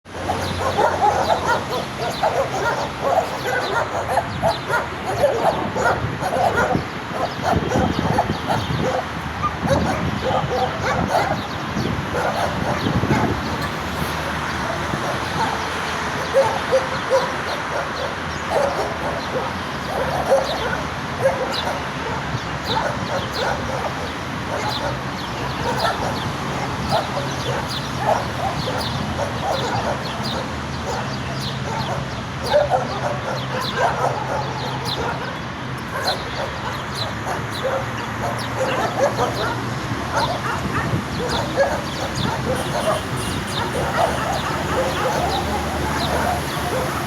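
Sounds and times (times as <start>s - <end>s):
dogs barking aggressively: 0.1s - 47.0s
dog yelps: 0.2s - 11.5s, 12.1s - 15.6s, 16.2s - 35.4s, 36.0s - 47.0s.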